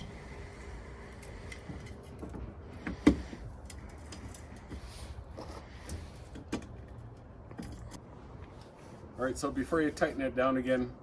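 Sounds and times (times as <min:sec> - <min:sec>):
hand tools clicking and knocking: 0:01.1 - 0:08.0.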